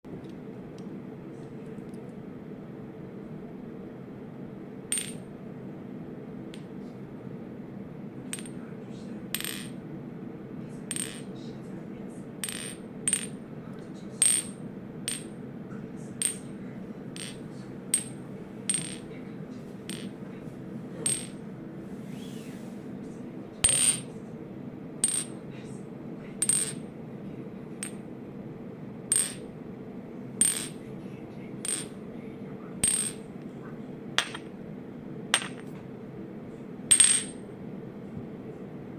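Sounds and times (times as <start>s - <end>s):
steady low hum: 0.0s - 38.9s
glass clinking: 34.2s - 34.5s, 35.4s - 35.7s.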